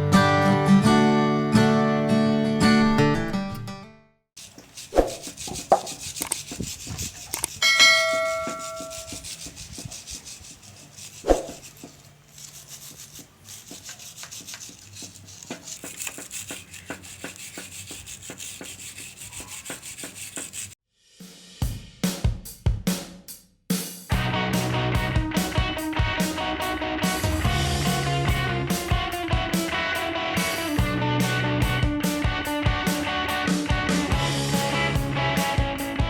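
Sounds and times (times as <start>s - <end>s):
scrubbing strokes: 4.4s - 20.8s
ringing metallic clang: 7.6s - 8.8s.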